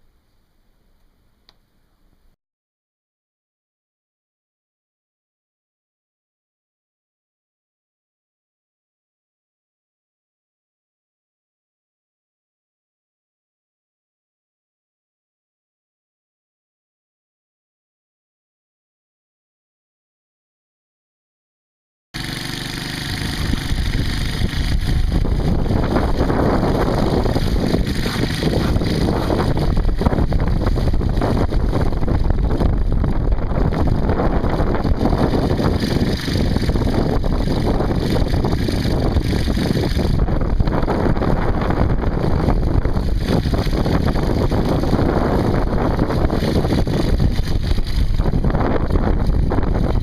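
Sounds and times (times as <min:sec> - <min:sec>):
wind buffeting microphone: 0:23.2 - 0:50.0.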